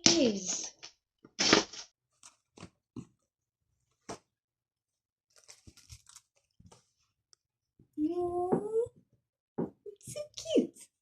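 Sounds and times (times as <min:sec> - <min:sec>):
packaging crinkling and rustling: 0:05.3 - 0:06.9.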